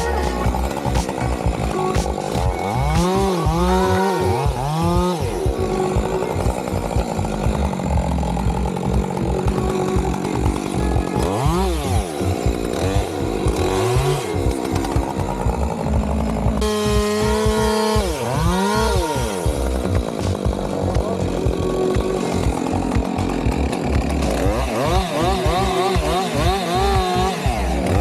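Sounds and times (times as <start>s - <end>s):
chainsaw engine revving: 0.0s - 28.0s.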